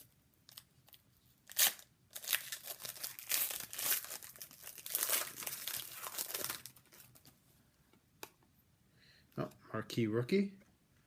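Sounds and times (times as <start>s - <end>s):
wrapper crinkling: 0.5s - 7.3s
wrapper ripping: 0.5s - 7.3s.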